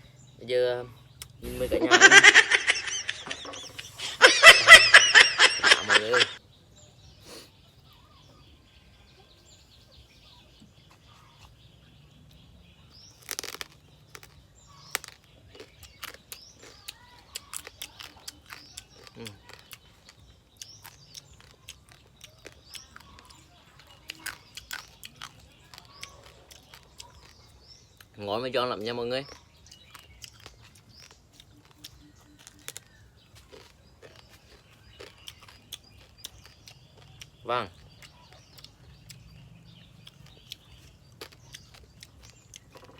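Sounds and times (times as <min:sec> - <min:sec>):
birds chirping faintly: 0:00.0 - 0:42.9
crab shell crunching: 0:13.1 - 0:28.1, 0:29.3 - 0:39.3, 0:39.9 - 0:42.9.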